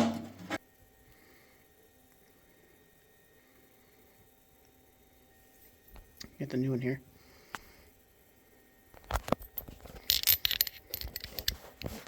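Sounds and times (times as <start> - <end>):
hand tools clinking and rattling: 9.3 - 12.0.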